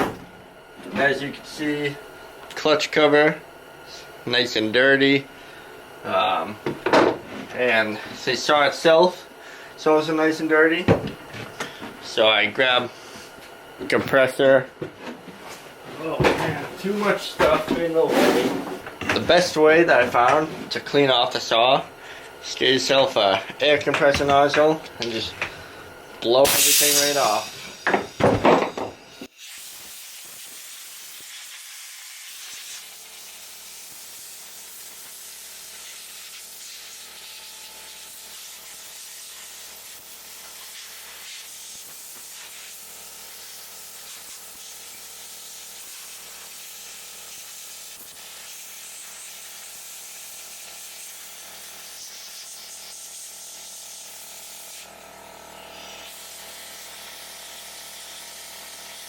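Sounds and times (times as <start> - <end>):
compressed air hissing: 12.8 - 13.5, 24.3 - 54.9.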